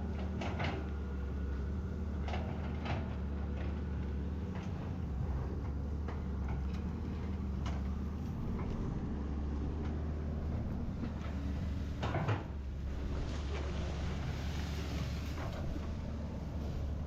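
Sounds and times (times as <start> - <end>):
excavator engine running: 0.0 - 17.0
clattering scrape of digging: 10.9 - 17.0
knocks and clanks: 12.0 - 12.7.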